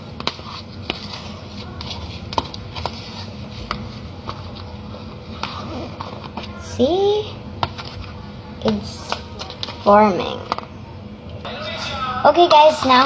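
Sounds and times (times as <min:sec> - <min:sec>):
slime being stirred: 0:00.0 - 0:06.9, 0:07.6 - 0:09.9.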